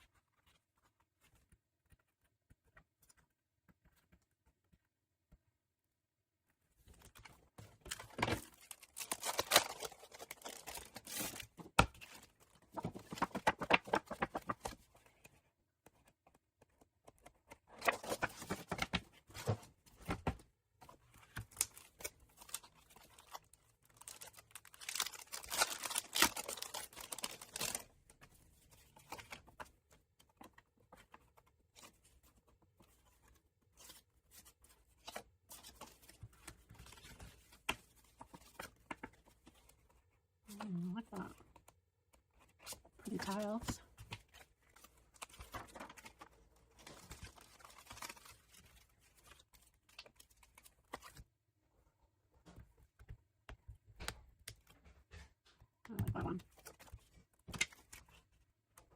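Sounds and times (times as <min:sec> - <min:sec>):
paper crinkling and tearing: 0:07.9 - 0:14.8, 0:21.4 - 0:28.0, 0:42.6 - 0:51.2.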